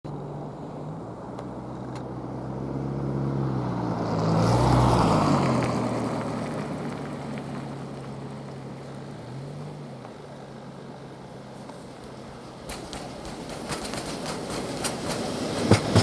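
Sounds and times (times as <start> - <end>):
electrical hum of locomotive: 11.1 - 16.0
train wheels rushing on rails: 11.7 - 16.0.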